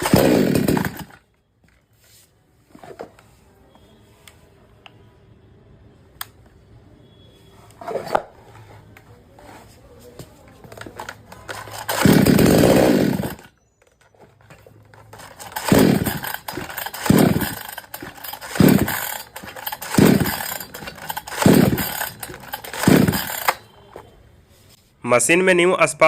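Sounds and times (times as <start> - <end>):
chainsaw engine starting and stalling: 0.0 - 1.2, 10.7 - 23.7.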